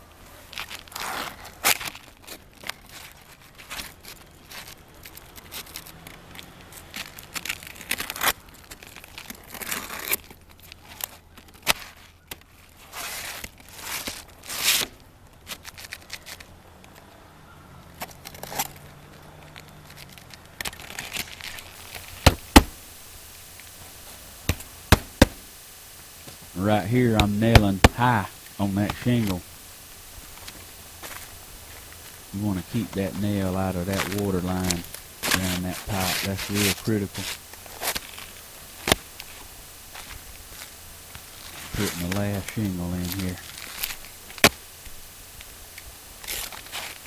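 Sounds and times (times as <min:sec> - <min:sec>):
shingles rustling and scraping: 0:00.0 - 0:47.0
nailing strikes: 0:22.2 - 0:22.8, 0:24.4 - 0:25.6, 0:27.1 - 0:28.0.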